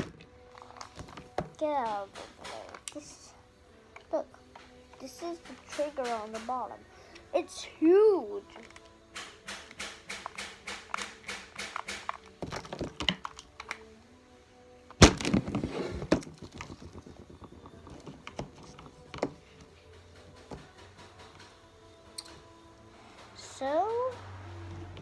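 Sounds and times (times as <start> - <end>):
small knocks: 0.0 - 3.0, 4.6 - 6.8, 8.5 - 13.7
plastic toy clicking: 0.0 - 3.1, 8.4 - 13.8.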